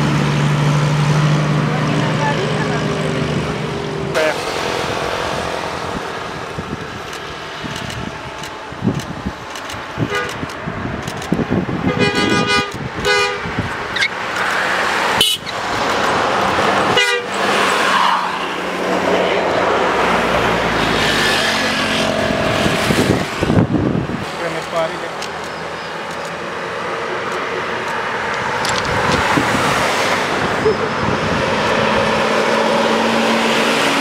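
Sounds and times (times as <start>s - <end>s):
passing traffic: 0.0s - 34.0s
bus horn musical tones: 10.0s - 10.3s, 11.8s - 13.6s, 15.2s - 15.5s, 16.9s - 17.3s.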